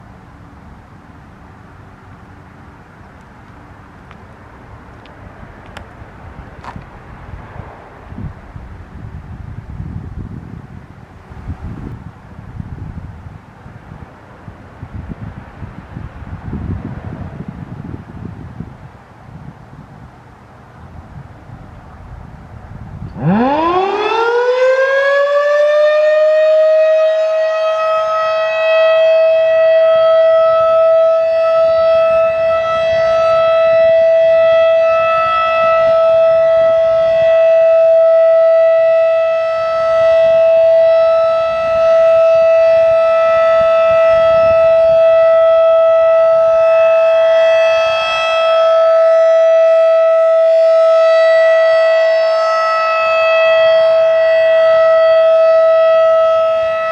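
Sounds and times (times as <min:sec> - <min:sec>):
mechanical warning siren: 0:23.0 - 0:56.9.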